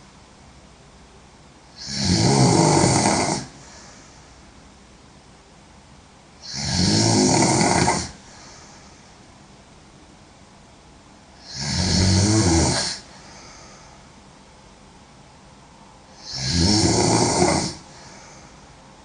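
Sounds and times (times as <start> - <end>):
woman snoring loudly: 1.7 - 3.8, 6.4 - 8.6, 11.4 - 13.3, 16.2 - 18.3.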